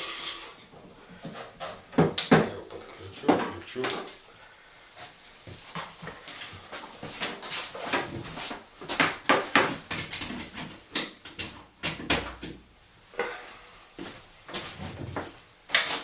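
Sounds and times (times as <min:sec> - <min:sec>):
irregular knocks and clatters: 0:00.8 - 0:02.6, 0:05.5 - 0:12.7.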